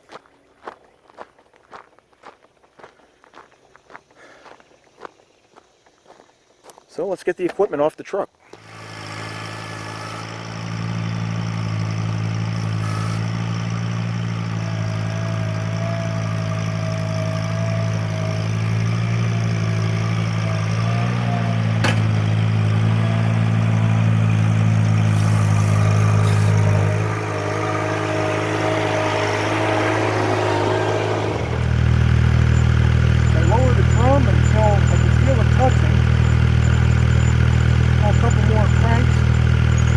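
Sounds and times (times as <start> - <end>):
tractor engine running: 8.6 - 39.9.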